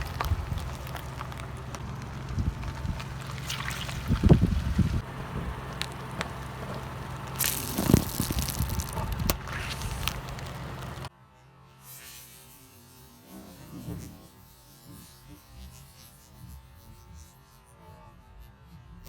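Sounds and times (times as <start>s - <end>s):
car tyre squashing wet object: 0.0s - 11.1s
low hum: 0.0s - 11.1s.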